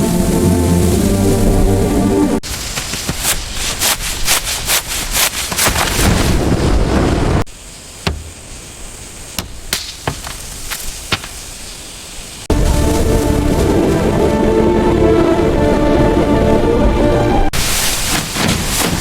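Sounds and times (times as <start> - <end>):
noisy wash: 0.0 - 10.0, 11.9 - 19.0
sharp knocks and cracks: 8.0 - 8.4, 9.4 - 11.4, 18.0 - 19.0.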